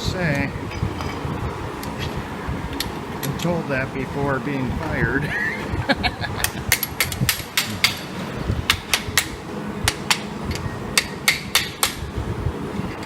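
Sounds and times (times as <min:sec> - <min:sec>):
hand tools clicking on metal: 0:06.4 - 0:08.1, 0:08.7 - 0:12.0.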